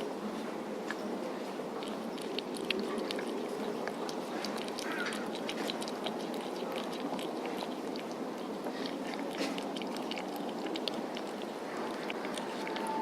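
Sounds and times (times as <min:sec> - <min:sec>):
steady background noise: 0:00.0 - 0:13.0
cat crunching food: 0:01.7 - 0:13.0.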